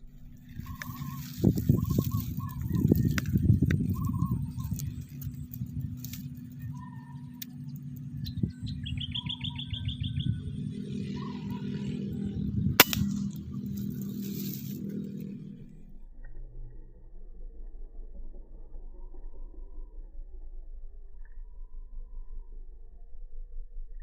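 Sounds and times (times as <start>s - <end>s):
steady low rumble: 0.0s - 24.0s
bird high trill: 0.4s - 5.1s, 8.2s - 12.1s
bird call notes: 0.4s - 15.4s
sharp click: 12.8s - 13.9s.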